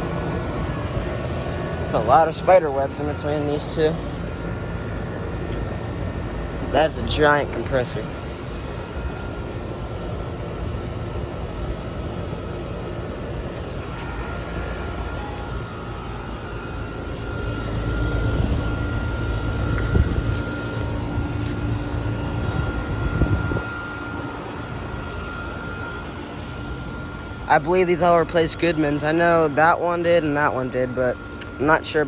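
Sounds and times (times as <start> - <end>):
air conditioner units humming: 0.0 - 32.0
steady high tone: 0.0 - 32.0.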